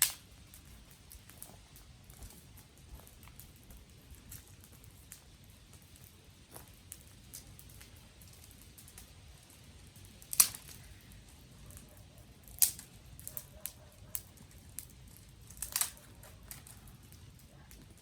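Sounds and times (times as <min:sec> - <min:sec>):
dry twigs snapping: 0:00.0 - 0:09.1, 0:10.1 - 0:11.3, 0:12.4 - 0:18.0.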